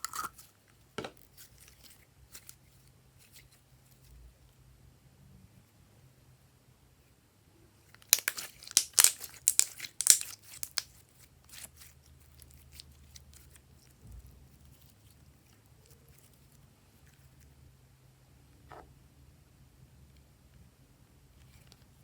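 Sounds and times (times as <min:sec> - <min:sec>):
slime squelching and crackling: 0:08.0 - 0:17.4.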